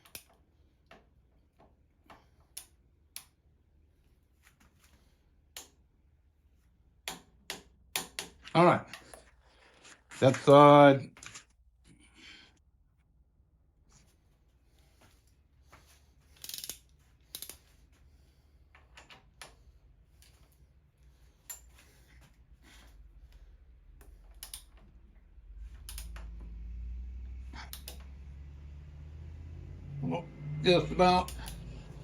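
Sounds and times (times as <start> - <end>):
metallic clicks of hand tools: 0.0 - 0.4, 16.4 - 17.6, 24.0 - 24.9, 25.8 - 26.3, 27.7 - 28.1, 31.3 - 31.7.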